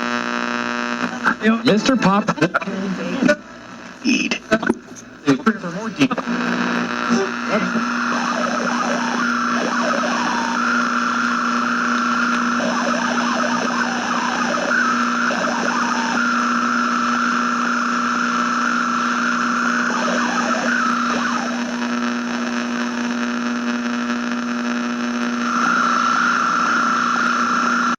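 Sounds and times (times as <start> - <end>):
crackle bursts: 0.0 - 1.4, 6.0 - 27.9
radio static hiss: 0.0 - 27.9.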